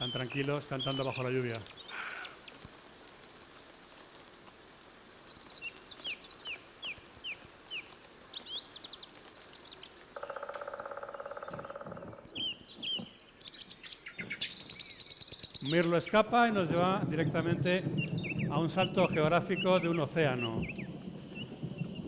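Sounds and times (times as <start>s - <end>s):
harsh pulsing bird call: 0.0s - 2.5s, 15.4s - 22.0s
blackbird alarm chatter: 0.0s - 2.8s, 5.3s - 22.0s
thrushes singing: 0.0s - 2.8s, 5.3s - 22.0s
rain hiss: 0.0s - 22.0s.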